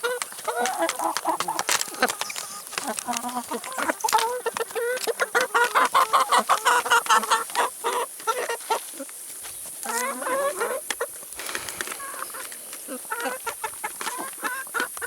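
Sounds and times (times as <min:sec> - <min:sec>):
chickens clucking: 0:00.0 - 0:15.0
chicken squawk: 0:11.4 - 0:14.9.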